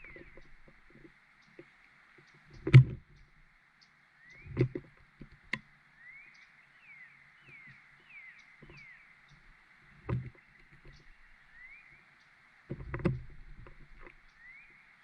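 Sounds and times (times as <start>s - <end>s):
faint steady hiss: 0.0s - 15.0s
bird chirps: 2.2s - 4.7s, 6.0s - 9.5s, 10.4s - 12.4s, 14.2s - 15.0s.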